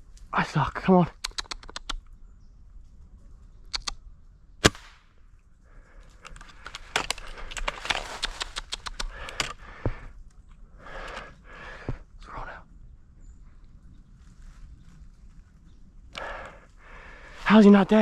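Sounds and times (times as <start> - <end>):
faint clicks: 1.1 - 2.1, 2.8 - 4.0, 5.9 - 11.3
air rifle shot: 4.6 - 5.1
clicking and rustling: 6.1 - 9.6.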